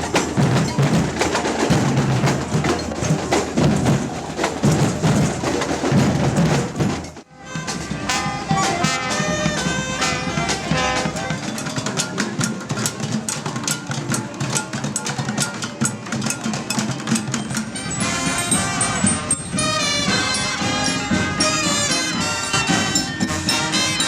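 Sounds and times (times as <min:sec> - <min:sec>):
marching band drumming: 0:00.0 - 0:24.0
horns playing a melody: 0:07.3 - 0:11.8, 0:17.6 - 0:24.0.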